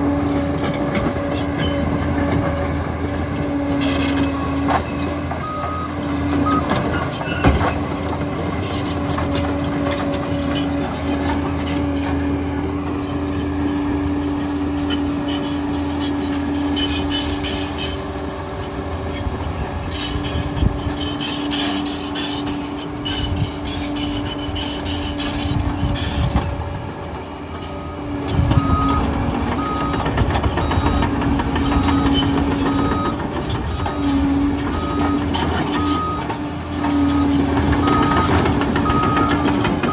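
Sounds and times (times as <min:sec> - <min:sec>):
bulldozer diesel engine running: 0:00.0 - 0:39.9
reversing alarm beeping: 0:05.4 - 0:07.6, 0:27.7 - 0:39.9.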